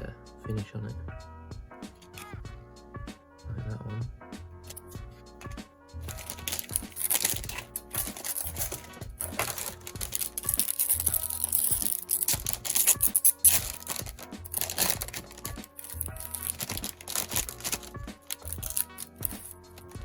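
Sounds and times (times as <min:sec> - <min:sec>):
background music sustained notes: 0:00.0 - 0:20.0
plastic wrapping crinkling and tearing: 0:06.1 - 0:20.0.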